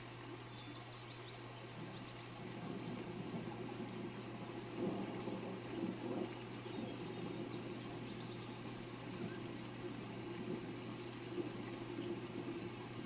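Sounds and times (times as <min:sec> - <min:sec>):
steady rain falling: 0:00.0 - 0:13.0
faint bird chirps: 0:00.5 - 0:02.3, 0:06.6 - 0:09.6.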